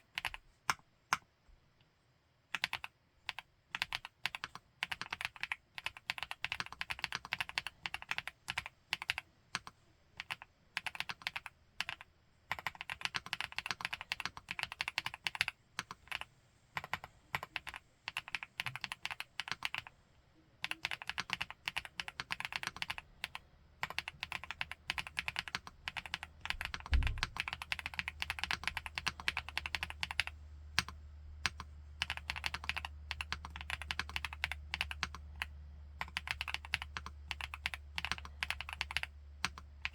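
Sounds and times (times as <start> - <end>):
mechanical keyboard typing: 0.0 - 1.3, 2.5 - 19.9, 20.6 - 39.9
steady low hum: 22.8 - 39.9
thump: 26.9 - 27.3.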